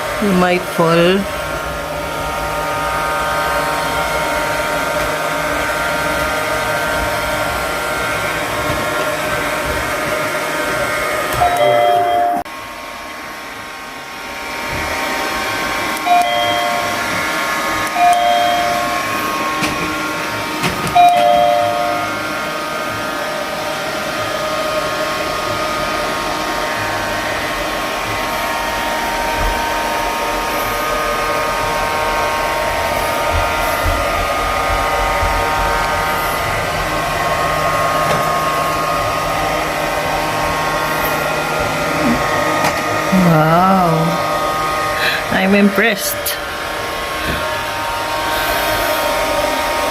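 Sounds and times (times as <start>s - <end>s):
robot vacuum cleaner motor whine: 1.2s - 43.3s, 44.0s - 45.3s, 46.4s - 49.9s
brief tones: 11.4s - 12.5s.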